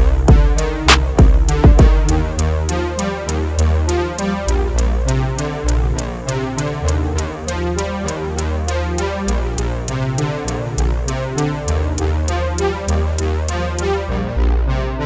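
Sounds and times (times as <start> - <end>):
drum machine beat: 0.0 - 2.7
deep bass line: 0.0 - 15.0
synthesizer chords: 0.0 - 15.0.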